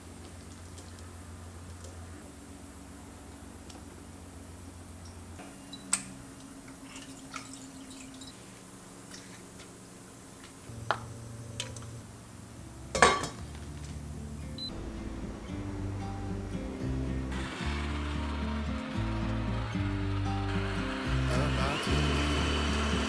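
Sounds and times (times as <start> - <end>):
soft background music: 10.7 - 23.0.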